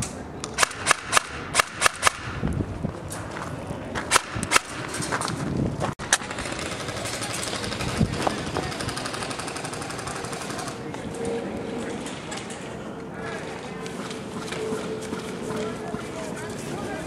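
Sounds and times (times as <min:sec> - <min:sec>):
airsoft gun shots: 0:00.6 - 0:02.4, 0:04.1 - 0:04.9.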